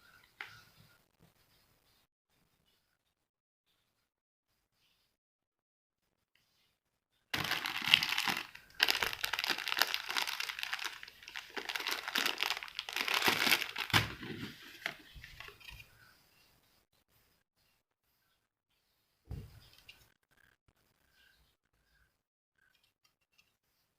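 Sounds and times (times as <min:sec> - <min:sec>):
packaging crinkling and tearing: 0:07.4 - 0:15.5.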